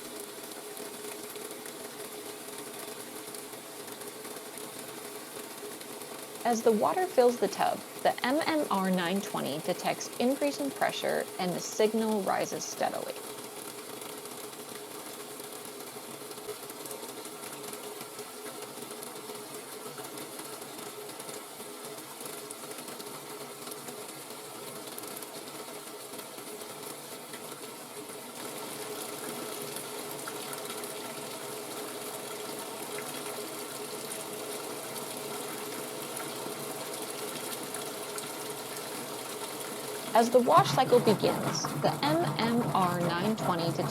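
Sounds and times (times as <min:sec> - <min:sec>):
washing machine hum: 0:02.7 - 0:13.6, 0:28.5 - 0:43.9
water running into washing machine: 0:27.8 - 0:43.9.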